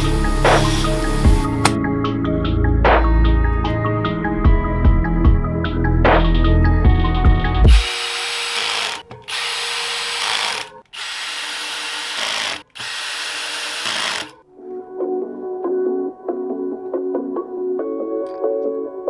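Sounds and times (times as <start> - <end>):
power tool running: 0.0 - 1.8, 7.7 - 14.4
background music: 0.0 - 19.0.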